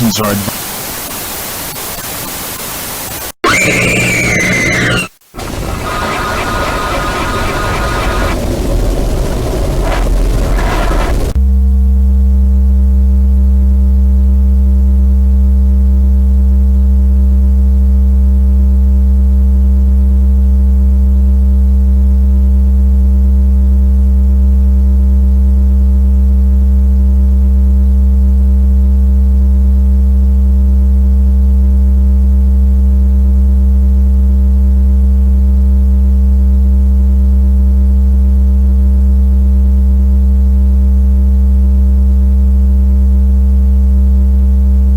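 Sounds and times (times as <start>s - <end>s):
low electronic drone: 3.5s - 11.4s.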